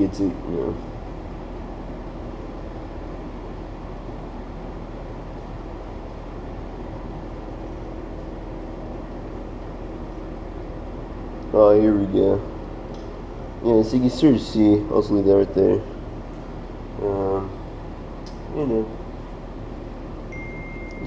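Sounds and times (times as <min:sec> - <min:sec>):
faint low hum: 0:00.0 - 0:21.0
ventilation fan rushing air: 0:00.0 - 0:21.0.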